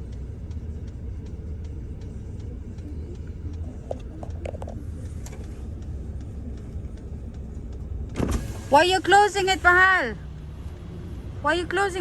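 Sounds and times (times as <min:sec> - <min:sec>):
faint regular ticking: 0:00.0 - 0:08.2
idling car rumble: 0:00.0 - 0:12.0.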